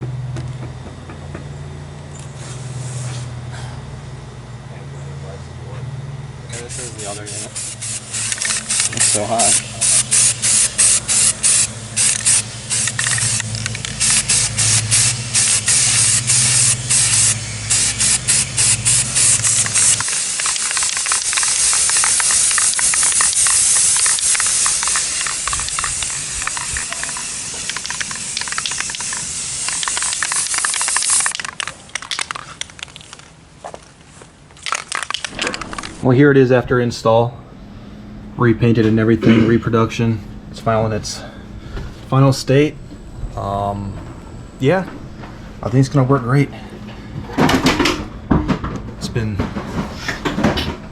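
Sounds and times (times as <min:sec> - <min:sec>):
paint spraying hiss: 0:02.3 - 0:03.4, 0:06.5 - 0:33.3
low hum: 0:34.7 - 0:47.5.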